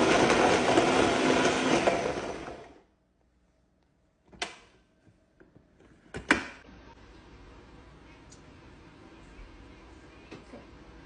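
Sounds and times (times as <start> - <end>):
faint room noise: 2.8 - 11.0.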